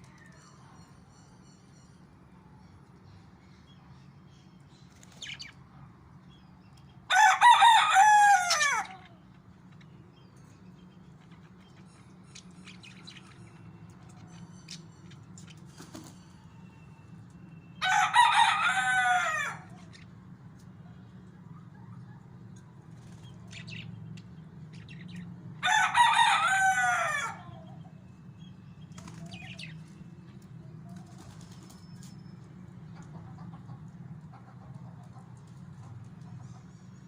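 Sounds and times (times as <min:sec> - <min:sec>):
rooster crowing: 0:07.1 - 0:09.0, 0:17.8 - 0:19.8, 0:25.6 - 0:27.7.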